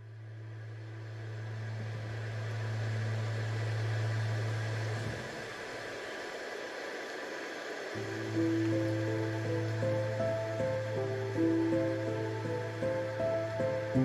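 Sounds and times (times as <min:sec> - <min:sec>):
hiss: 0:01.7 - 0:14.0.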